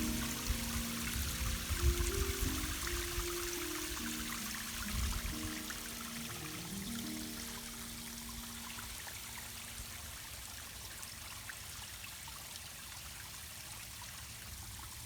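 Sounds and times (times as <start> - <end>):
held music note: 0.0 - 9.2
water trickling into pond: 0.0 - 15.0.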